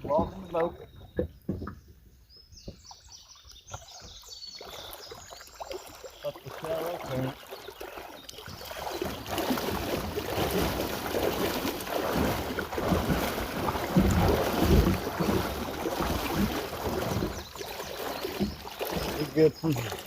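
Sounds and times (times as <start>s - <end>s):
river water rushing and splashing: 4.6s - 20.0s.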